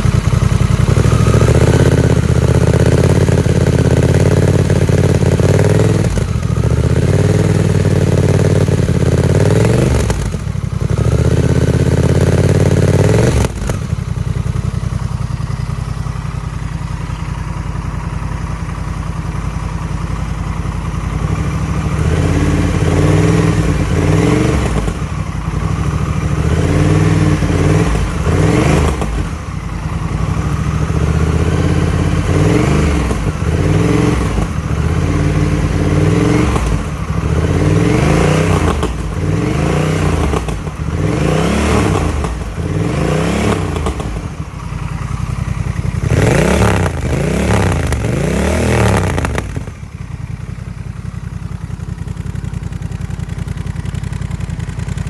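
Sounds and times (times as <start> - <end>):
motorcycle engine idling and revving: 0.0 - 55.0.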